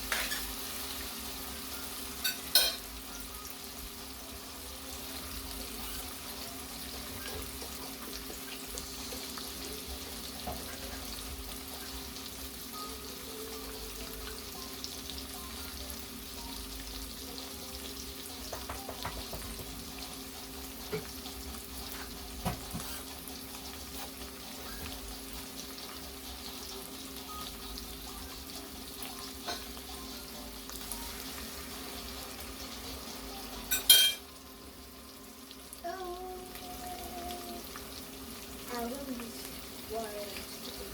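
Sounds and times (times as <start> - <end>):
fish sizzling in a pan: 0.0 - 40.9
utensil knocking against pan: 18.5 - 19.8.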